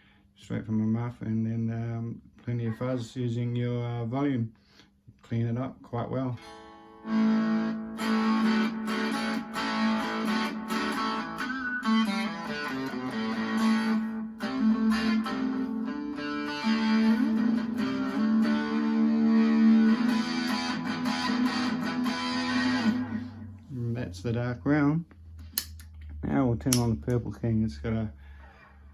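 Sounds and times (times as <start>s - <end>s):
fuzz electric guitar chords: 6.4s - 23.8s.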